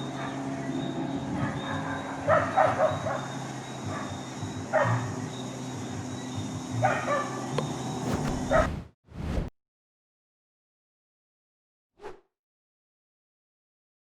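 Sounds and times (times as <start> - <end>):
dogs barking: 0.0 - 5.3, 6.8 - 7.6
steady low hum: 0.0 - 9.5.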